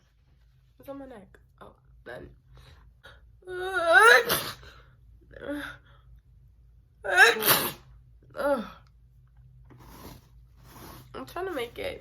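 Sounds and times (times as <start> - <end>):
woman sneezing: 4.0 - 4.6, 7.1 - 7.9.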